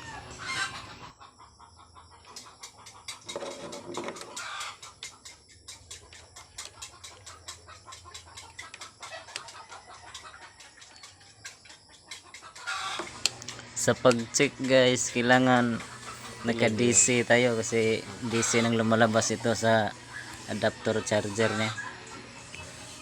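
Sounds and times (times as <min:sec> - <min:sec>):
chickens clucking: 0:00.0 - 0:23.0
steady low hum: 0:13.0 - 0:23.0.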